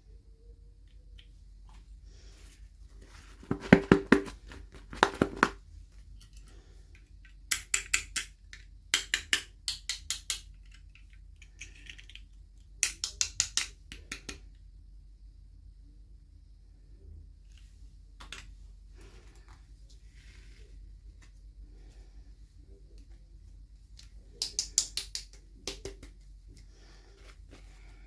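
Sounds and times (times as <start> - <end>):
plastic toy pieces clicking: 7.5 - 14.4.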